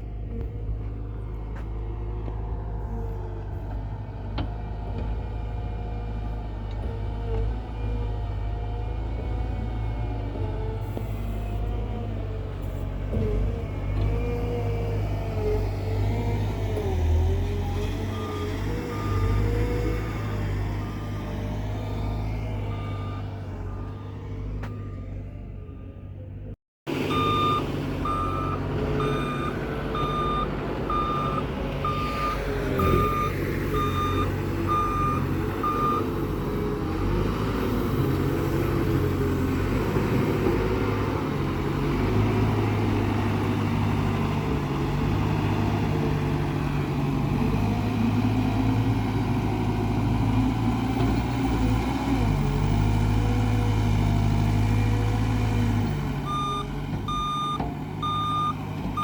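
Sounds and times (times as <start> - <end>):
diesel construction machine engine: 0.0 - 59.0
reversing alarm beeping: 27.0 - 36.2, 56.2 - 59.0.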